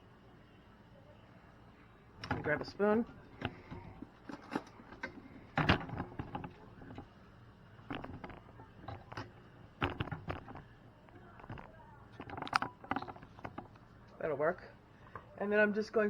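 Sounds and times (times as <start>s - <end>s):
kitchen utensils clicking and knocking: 7.9s - 13.7s.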